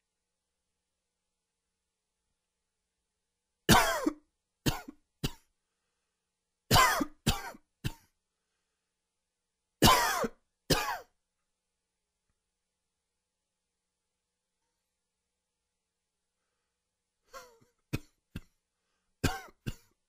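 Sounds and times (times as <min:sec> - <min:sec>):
man coughing: 0:03.7 - 0:05.5, 0:09.8 - 0:11.1, 0:19.2 - 0:20.0.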